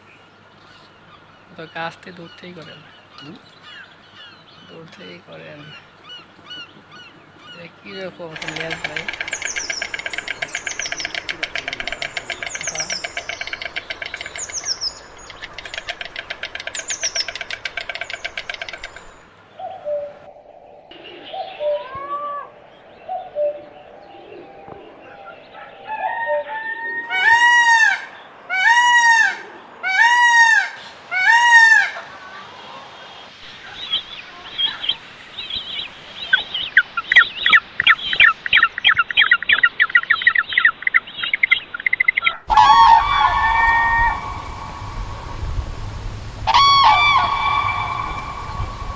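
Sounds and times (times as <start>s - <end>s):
loud arching bird calls: 0.0s - 45.6s, 46.3s - 48.9s
rapid chattering bird trill: 1.6s - 19.2s, 33.5s - 42.4s.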